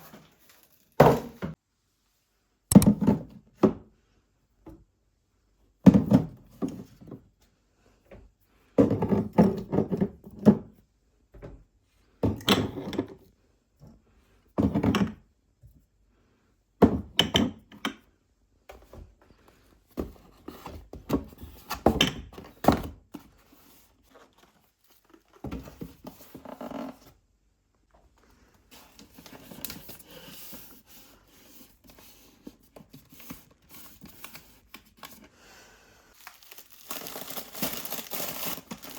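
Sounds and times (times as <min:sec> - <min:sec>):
packaging rustling: 0:36.2 - 0:38.9.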